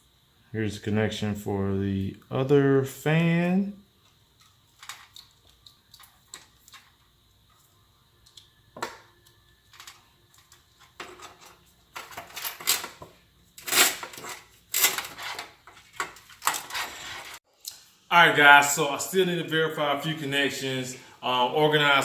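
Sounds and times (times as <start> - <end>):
cables rustling and scraping: 9.7 - 17.4.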